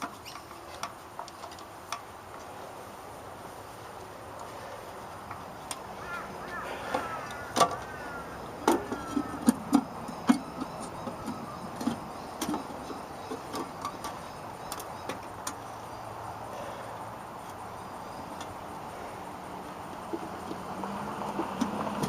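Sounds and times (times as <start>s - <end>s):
steady background hiss: 0.0s - 22.0s.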